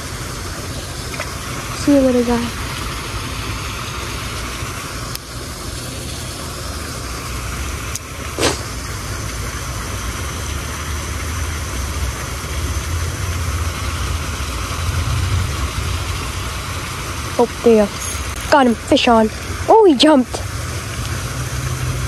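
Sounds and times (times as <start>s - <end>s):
water pouring over spillway: 0.0s - 22.0s
low rumble: 12.9s - 19.7s.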